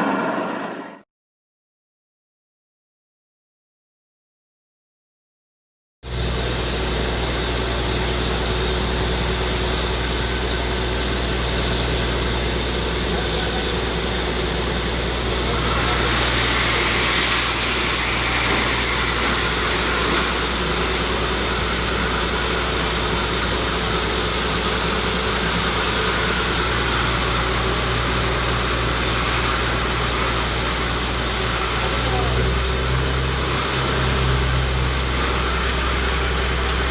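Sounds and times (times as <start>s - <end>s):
drilling rig engine running: 6.1s - 36.9s
hiss: 12.9s - 34.6s.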